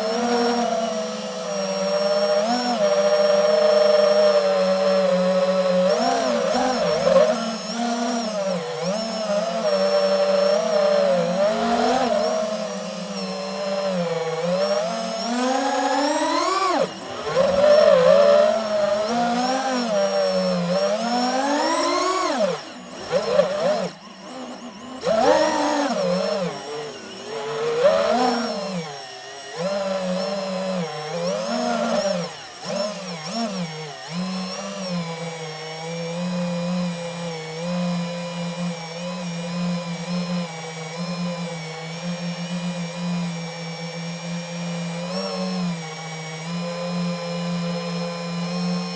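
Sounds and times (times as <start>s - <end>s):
drone propellers whining: 0.0s - 36.1s.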